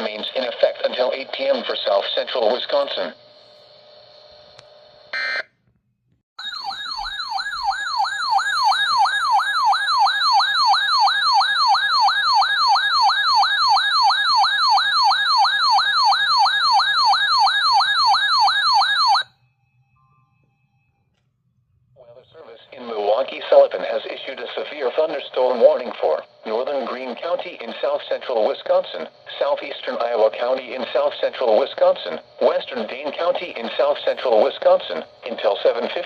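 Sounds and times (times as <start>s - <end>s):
electronic siren warbling: 6.4s - 19.4s.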